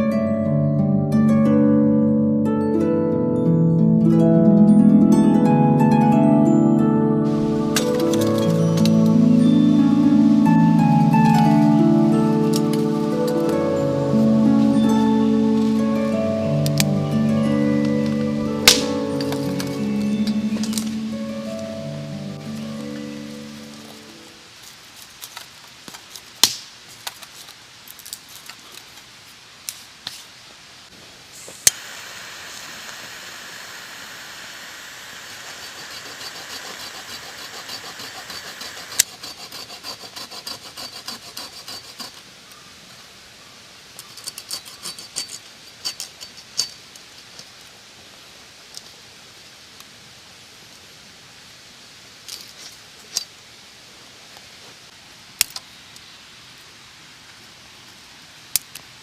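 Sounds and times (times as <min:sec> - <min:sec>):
steady hiss: 0:07.2 - 0:59.0.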